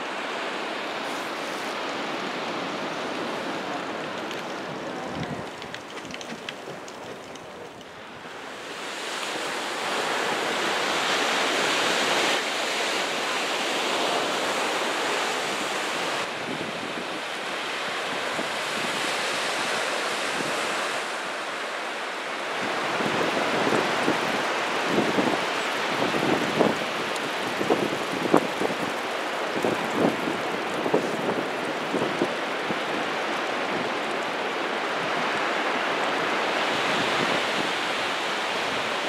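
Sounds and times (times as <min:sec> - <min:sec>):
ocean surf breaking: 0:00.0 - 0:39.0
wind on microphone: 0:01.0 - 0:08.0, 0:14.0 - 0:21.0, 0:22.6 - 0:39.0.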